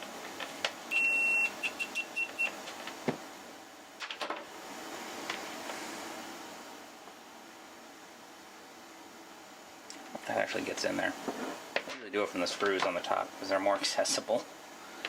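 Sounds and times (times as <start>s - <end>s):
multimeter continuity beeps: 0.9s - 2.6s.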